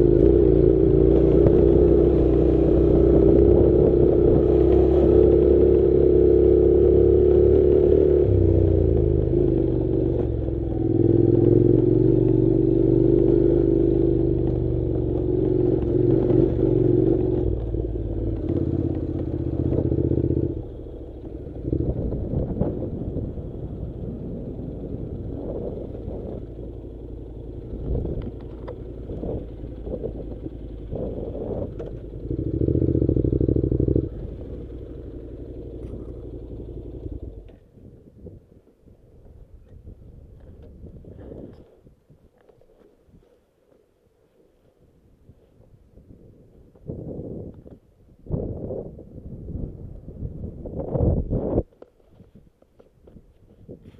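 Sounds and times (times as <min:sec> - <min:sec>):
motorcycle engine running: 0:00.0 - 0:38.2.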